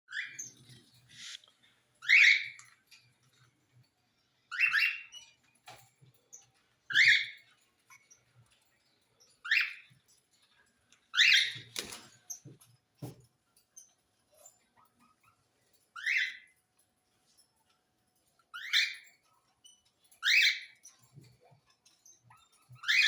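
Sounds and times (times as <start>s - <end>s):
parrot calling: 2.0s - 2.6s.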